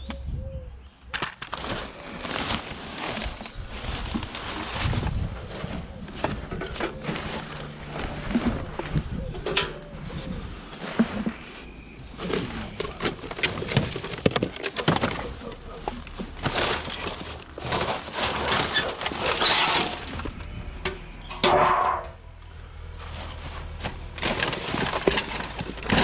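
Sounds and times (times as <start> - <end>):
scrap objects knocking and crashing: 10.7 - 22.2, 23.7 - 26.0.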